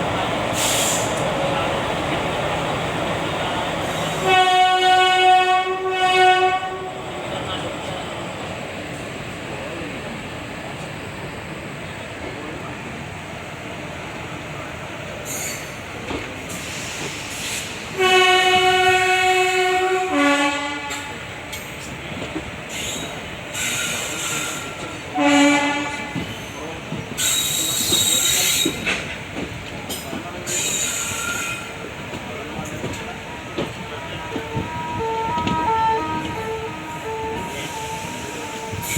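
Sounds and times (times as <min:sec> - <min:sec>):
train coaches rumbling on track: 0:00.0 - 0:38.9
locomotive horn blast: 0:04.2 - 0:07.0, 0:18.0 - 0:21.2, 0:25.1 - 0:26.2, 0:34.0 - 0:38.9.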